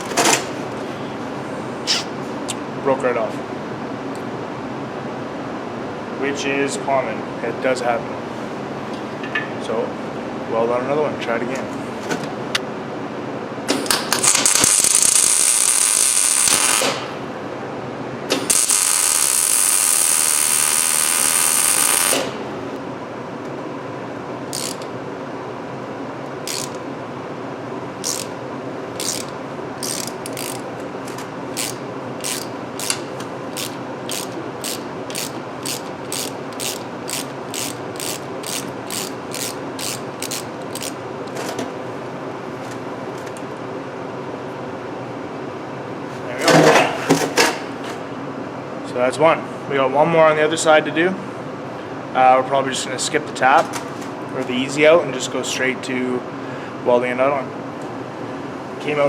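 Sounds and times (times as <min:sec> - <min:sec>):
welding crackle: 0:14.3 - 0:16.9, 0:18.6 - 0:22.2
ratchet clicking: 0:24.5 - 0:24.9, 0:26.5 - 0:26.8, 0:28.0 - 0:28.3, 0:29.0 - 0:30.6, 0:31.6 - 0:33.0, 0:33.6 - 0:41.0.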